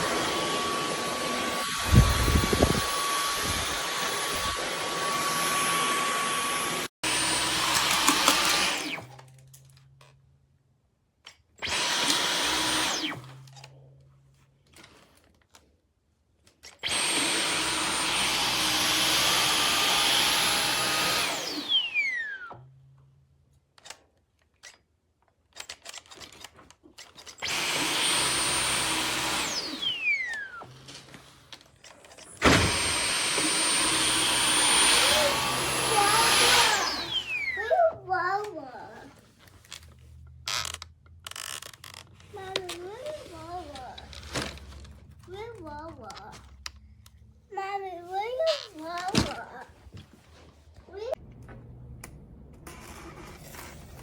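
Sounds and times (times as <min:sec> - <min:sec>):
cordless vacuum whining: 0:00.0 - 0:09.4, 0:11.6 - 0:13.6, 0:16.7 - 0:22.7, 0:27.0 - 0:39.8, 0:40.5 - 0:46.8.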